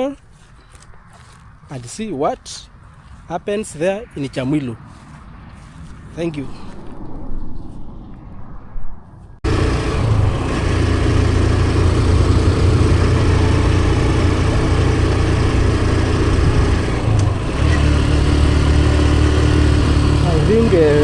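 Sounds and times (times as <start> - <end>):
wind rushing across microphone: 2.8 - 9.4
motorcycle engine running: 9.4 - 21.0.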